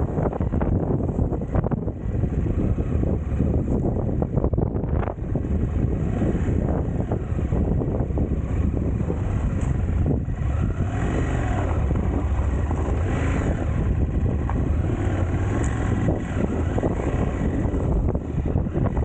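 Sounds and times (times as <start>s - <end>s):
motorcycle engine: 0.0s - 19.0s
wind noise on microphone: 0.0s - 19.0s.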